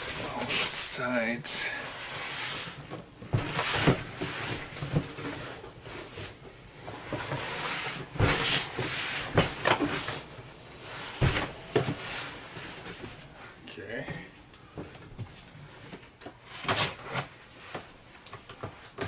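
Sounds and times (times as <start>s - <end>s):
cardboard scraping and rustling: 1.8s - 13.4s.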